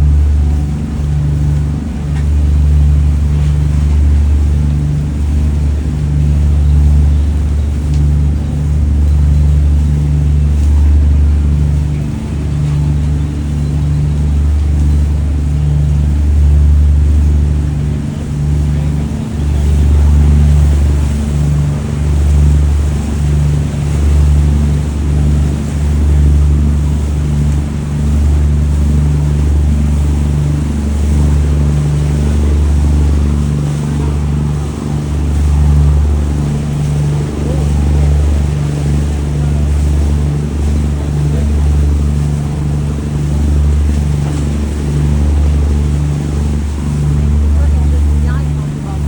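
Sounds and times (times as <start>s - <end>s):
boat engine droning: 0.0s - 49.0s.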